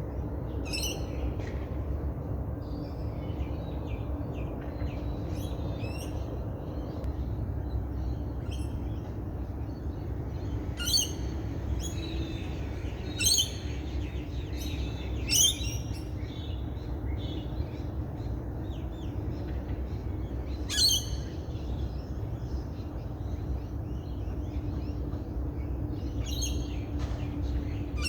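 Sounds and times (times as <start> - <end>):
low background rumble: 0.0 - 28.0
bird chirps and song: 0.2 - 1.7, 2.6 - 28.0.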